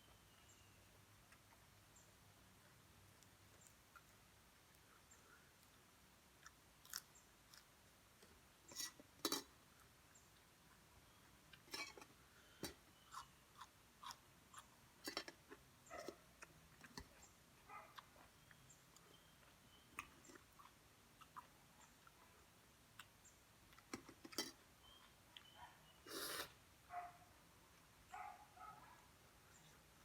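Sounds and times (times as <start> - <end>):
person chewing food: 5.6 - 8.4, 10.6 - 17.3, 17.9 - 24.3.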